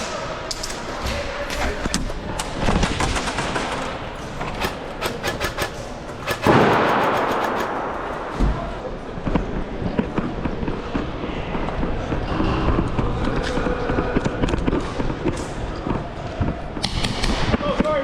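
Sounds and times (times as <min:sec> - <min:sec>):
airsoft gun shots: 0:04.6 - 0:08.7.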